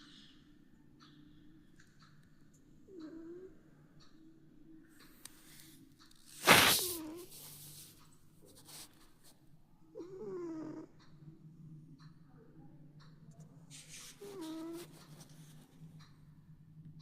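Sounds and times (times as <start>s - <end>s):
cat snoring: 2.9s - 3.6s, 6.3s - 7.9s, 9.9s - 11.1s, 13.8s - 15.8s.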